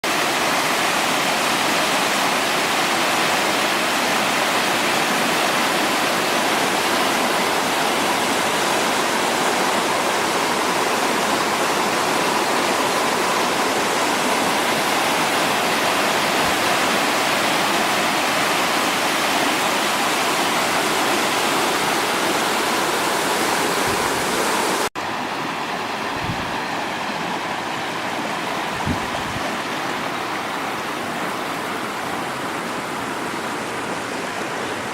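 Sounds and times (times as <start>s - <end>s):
waterfall roaring: 0.0s - 34.9s
low bumps: 26.2s - 26.6s.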